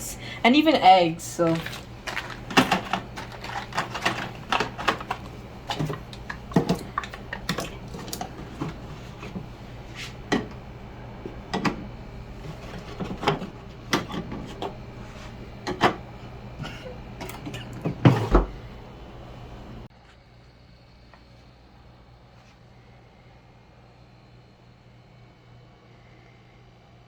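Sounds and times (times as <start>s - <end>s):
low steady hum: 0.0s - 27.0s
items clattering on plastic shelves: 0.6s - 18.8s.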